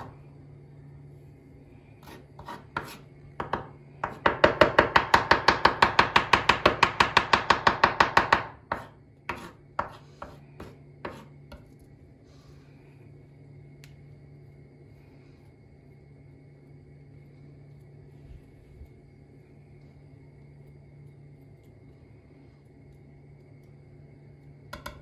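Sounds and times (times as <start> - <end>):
knife chopping on cutting board: 2.0 - 11.3.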